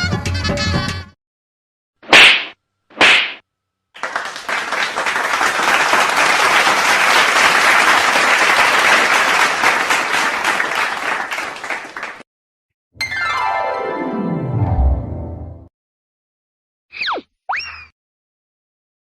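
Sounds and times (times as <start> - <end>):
crowd applause: 4.0 - 12.2.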